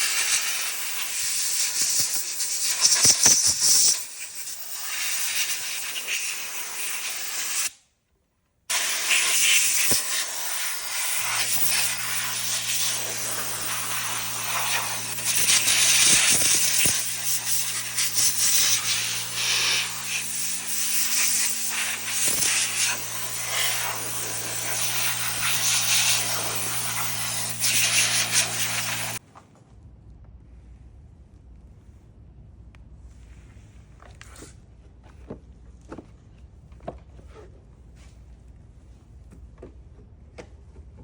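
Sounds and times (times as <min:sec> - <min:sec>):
air hissing: 0:00.0 - 0:07.8, 0:08.7 - 0:29.2.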